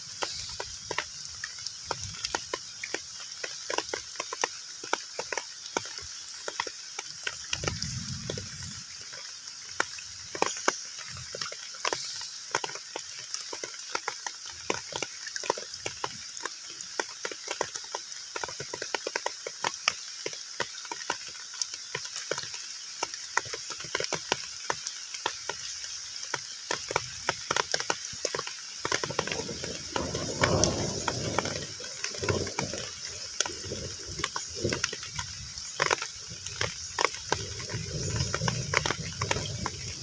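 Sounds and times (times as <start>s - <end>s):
heavy rain on water: 0.0s - 40.0s
deep rushing water: 26.7s - 40.0s.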